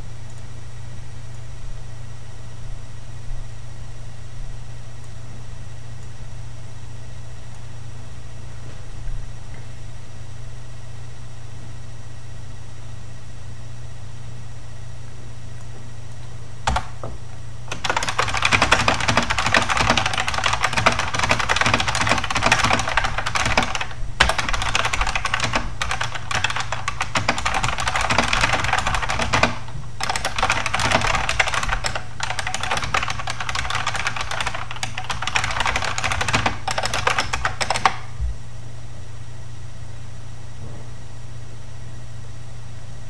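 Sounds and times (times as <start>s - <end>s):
steady low hum: 0.0s - 43.0s
fast mechanical keyboard typing: 16.7s - 17.0s, 17.7s - 38.1s.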